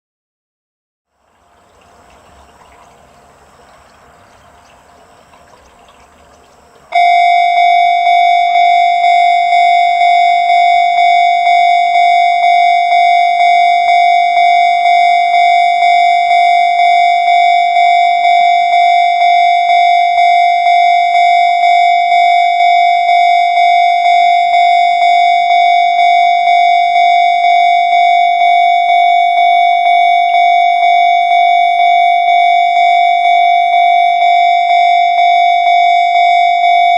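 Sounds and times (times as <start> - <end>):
faint steady hiss: 1.1 - 11.2
level crossing alarm ringing: 6.9 - 36.9.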